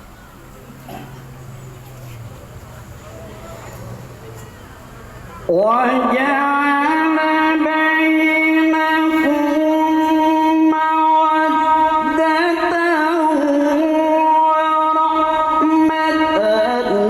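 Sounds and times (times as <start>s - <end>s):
man chanting melodically: 5.4s - 17.0s.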